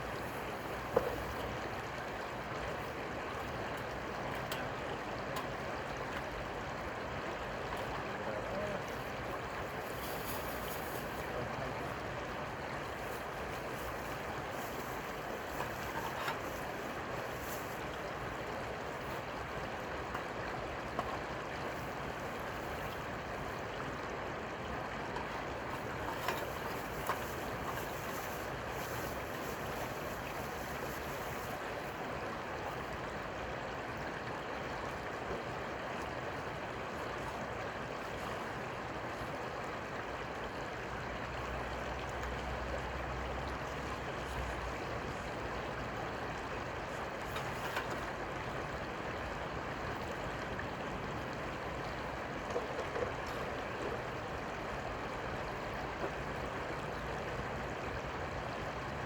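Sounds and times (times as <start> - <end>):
rushing water: 0.0 - 59.0.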